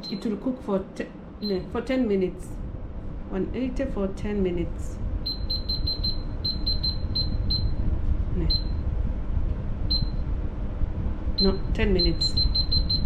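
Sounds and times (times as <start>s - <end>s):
oven control panel beeping: 0.0s - 0.5s, 5.3s - 7.8s, 9.9s - 10.3s, 11.4s - 13.0s
steady low hum: 0.0s - 13.0s.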